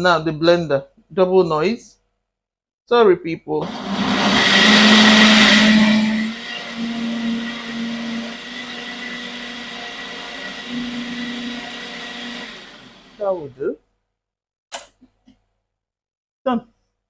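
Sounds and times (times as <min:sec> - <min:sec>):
kitchen blender running: 0:03.6 - 0:13.4.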